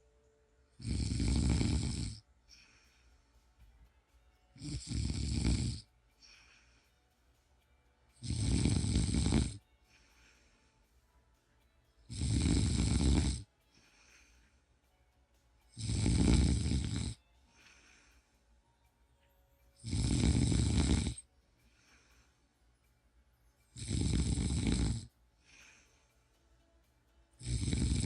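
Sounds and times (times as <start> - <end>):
person snoring: 0.8 - 3.0, 4.6 - 6.8, 8.2 - 10.7, 12.1 - 14.3, 15.7 - 18.2, 19.8 - 22.3, 23.7 - 26.1, 27.4 - 28.0
faint breath out: 2.4 - 3.6, 6.1 - 7.2, 9.6 - 11.2, 13.6 - 15.0, 17.2 - 18.8, 21.4 - 22.7, 25.4 - 26.5.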